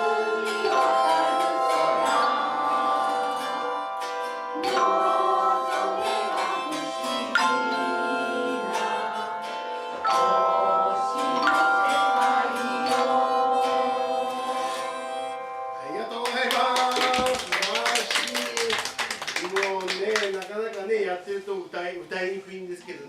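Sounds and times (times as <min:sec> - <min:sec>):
group of voices singing: 0:00.0 - 0:15.9
tone chimes ringing a slow melody: 0:00.0 - 0:16.4.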